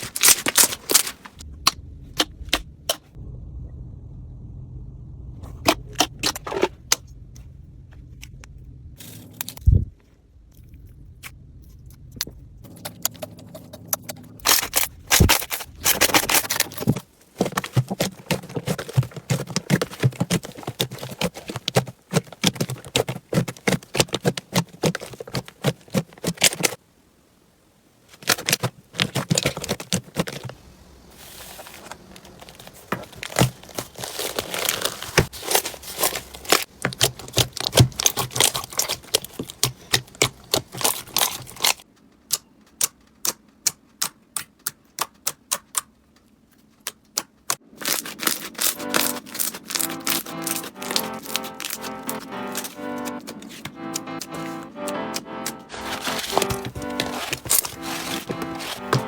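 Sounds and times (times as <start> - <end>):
slime crackling and popping: 32.2 - 41.8, 47.6 - 52.8.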